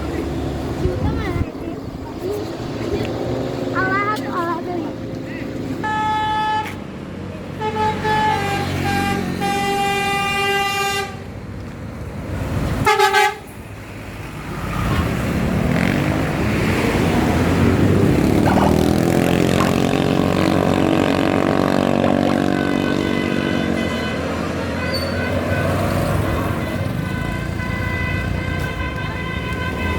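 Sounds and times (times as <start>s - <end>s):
bus musical horn tune: 5.8s - 6.8s, 7.6s - 11.3s, 12.8s - 13.5s, 22.2s - 29.9s
horn toot: 7.6s - 11.3s, 12.8s - 13.5s, 19.5s - 29.9s
bus engine pulling away: 13.4s - 27.0s.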